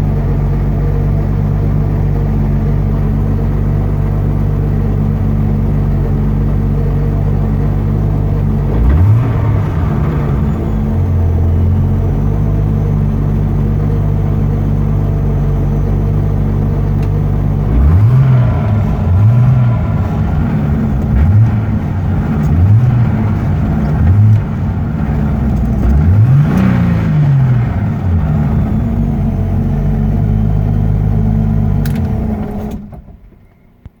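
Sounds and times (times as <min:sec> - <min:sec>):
car engine idling and revving: 0:00.0 - 0:34.0.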